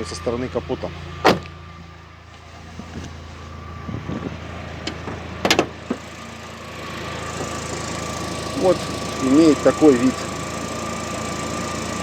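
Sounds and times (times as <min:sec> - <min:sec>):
engine idling: 0:00.0 - 0:12.0
clunks and knocks: 0:01.2 - 0:01.6, 0:03.9 - 0:06.1.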